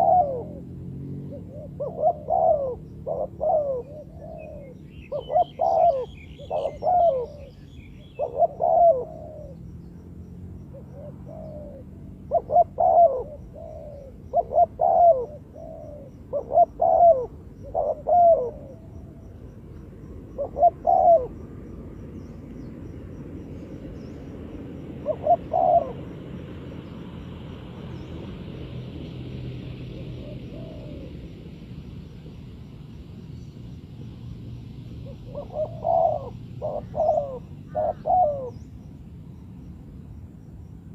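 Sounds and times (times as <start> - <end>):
bird twittering: 0.0 - 0.6, 1.2 - 28.4, 35.0 - 39.0
dove cooing: 0.0 - 32.4, 34.9 - 39.0.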